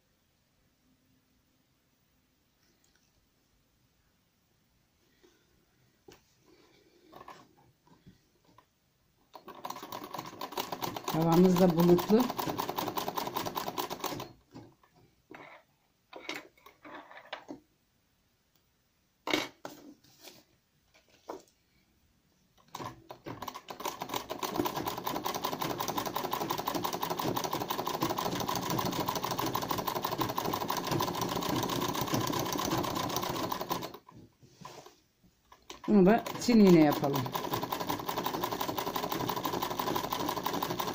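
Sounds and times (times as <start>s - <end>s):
sewing machine stitching: 9.3s - 14.7s, 22.7s - 40.9s.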